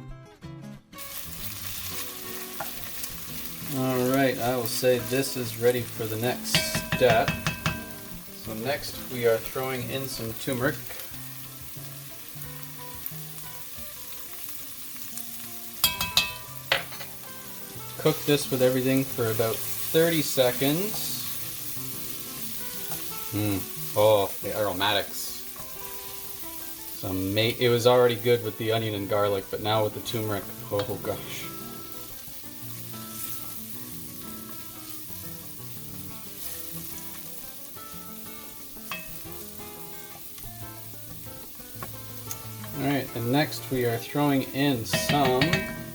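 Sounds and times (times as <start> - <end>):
onions sizzling in oil: 1.0 - 45.9
utensil knocking against pot: 6.5 - 8.2, 15.8 - 17.1, 44.9 - 45.9.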